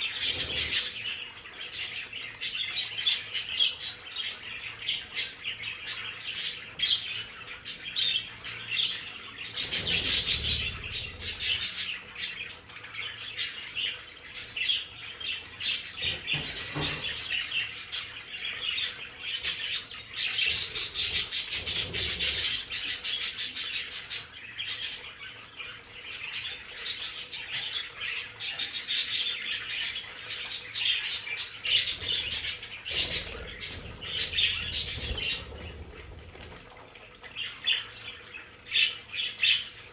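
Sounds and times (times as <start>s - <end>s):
budgerigars chirping: 28.5s - 35.8s
wings fluttering: 31.9s - 36.9s.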